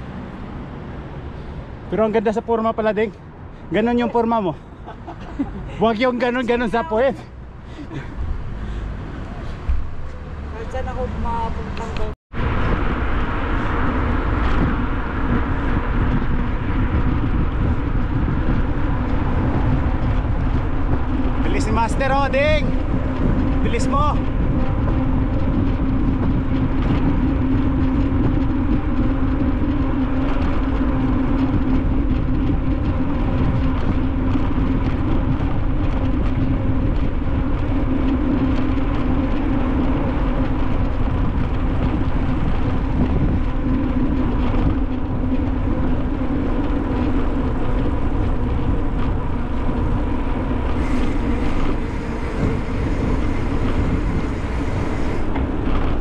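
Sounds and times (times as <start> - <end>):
wind buffeting microphone: 0.0 - 56.0
steady droning hum: 22.6 - 56.0.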